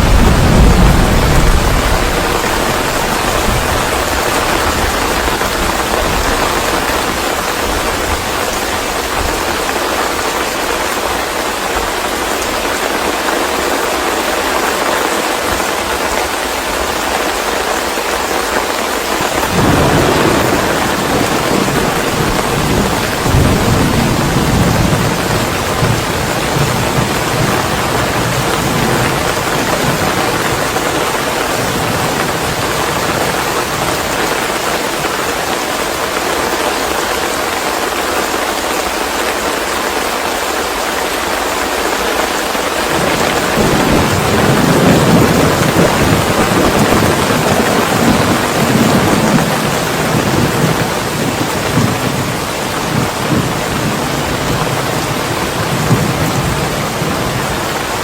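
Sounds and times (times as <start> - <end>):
thunder rumbling: 0.0 - 10.6, 19.2 - 35.3, 42.8 - 58.0
steady rain: 0.0 - 58.0.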